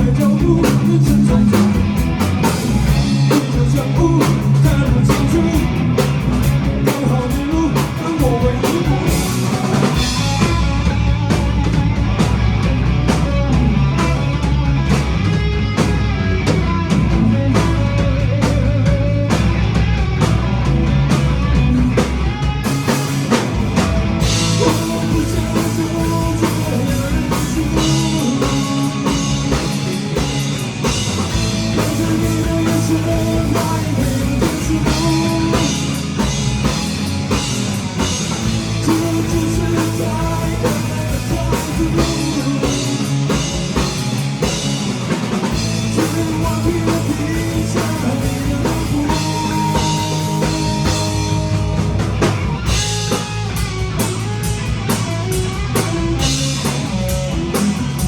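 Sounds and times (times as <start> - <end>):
live rock band: 0.0 - 58.0
person singing: 24.4 - 30.1, 31.7 - 36.0, 38.8 - 43.4, 46.0 - 51.8.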